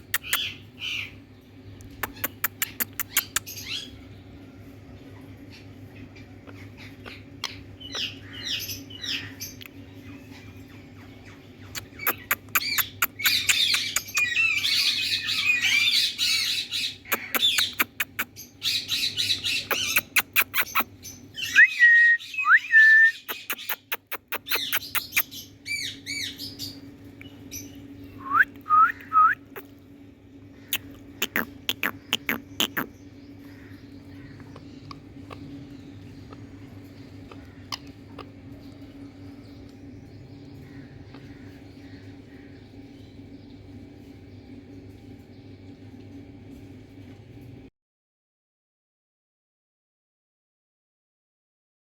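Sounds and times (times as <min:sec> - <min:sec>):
parrot squawking and chatter: 0:00.0 - 0:01.2, 0:01.8 - 0:04.0, 0:05.2 - 0:26.9, 0:30.5 - 0:39.6
steady low hum: 0:00.0 - 0:47.7.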